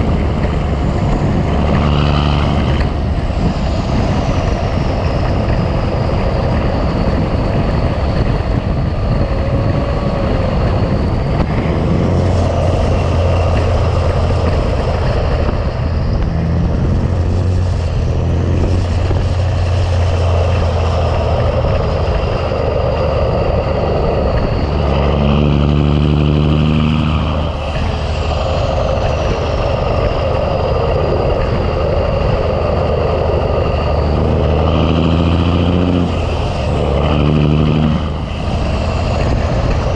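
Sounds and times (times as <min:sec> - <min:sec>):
diesel truck engine under load: 0:00.0 - 0:39.9.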